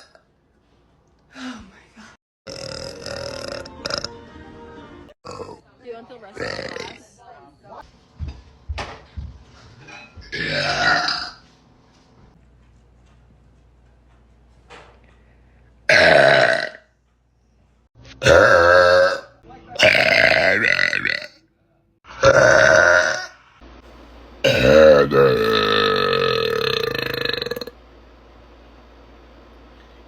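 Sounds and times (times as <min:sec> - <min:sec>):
woman burping loudly: 0:02.5 - 0:04.1, 0:05.2 - 0:05.6, 0:06.4 - 0:07.0, 0:10.3 - 0:11.4, 0:15.9 - 0:16.9, 0:18.2 - 0:21.4, 0:22.2 - 0:23.3, 0:24.5 - 0:27.8.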